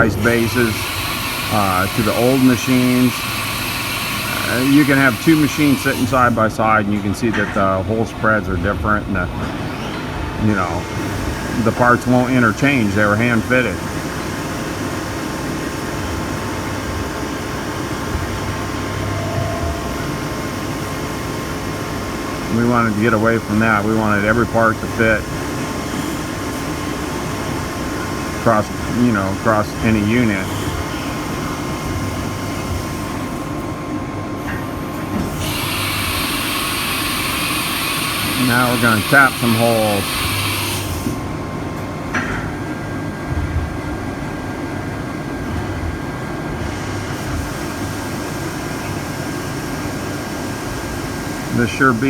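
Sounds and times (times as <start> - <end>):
steady hiss: 0.0 - 9.3, 10.4 - 33.6, 35.2 - 41.2
machine humming and whirring: 0.0 - 52.0.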